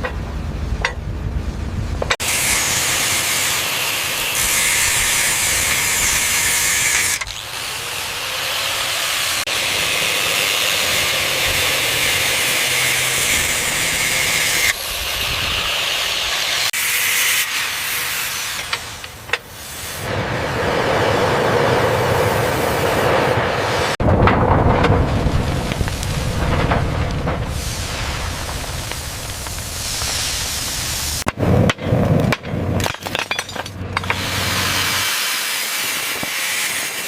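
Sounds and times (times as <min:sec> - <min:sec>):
loud steady hissing: 0:01.5 - 0:23.0, 0:27.3 - 0:31.3.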